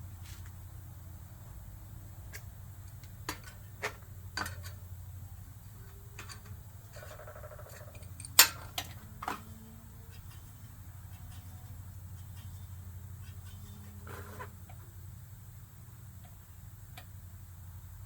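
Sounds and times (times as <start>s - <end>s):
steady low hum: 0.0s - 18.0s
wrench clicking on brake rotor: 5.9s - 10.5s
rubbing rasp: 10.0s - 14.6s.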